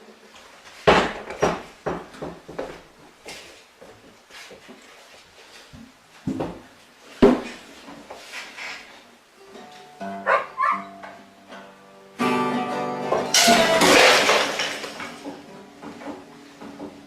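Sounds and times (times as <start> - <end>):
guitar music: 9.4 - 13.9.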